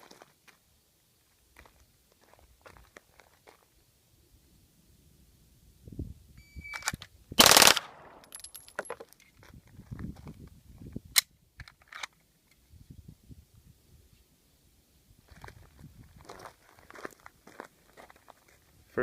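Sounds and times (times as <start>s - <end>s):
machine pistol full-auto burst: 7.4s - 8.2s.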